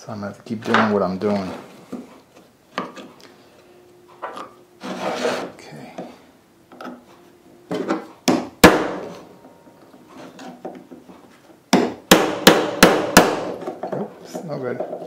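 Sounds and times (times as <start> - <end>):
hammer striking metal: 7.7 - 9.8, 11.7 - 13.6.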